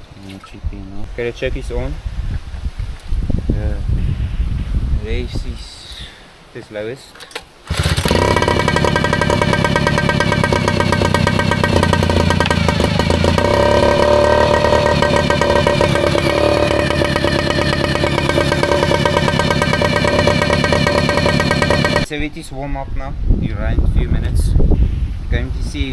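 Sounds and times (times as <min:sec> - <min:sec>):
outboard motor running: 0:07.7 - 0:22.1.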